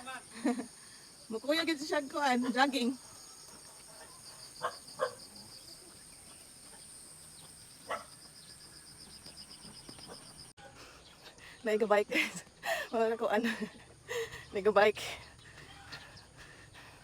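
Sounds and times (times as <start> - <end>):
insects trilling: 0.0 - 10.5.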